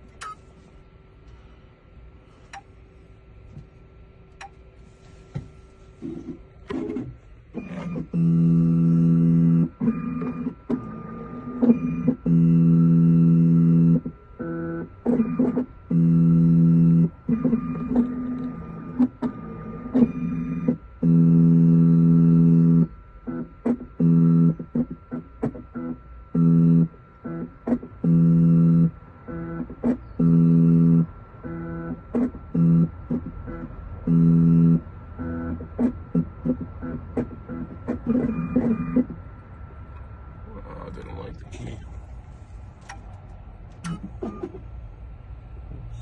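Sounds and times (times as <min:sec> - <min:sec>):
mechanical movement noise: 0:04.9 - 0:08.4.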